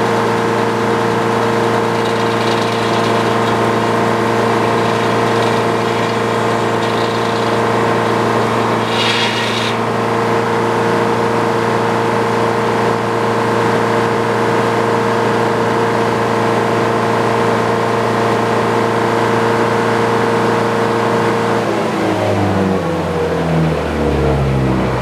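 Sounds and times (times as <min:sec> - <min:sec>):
sawmill engine running: 0:00.0 - 0:10.7.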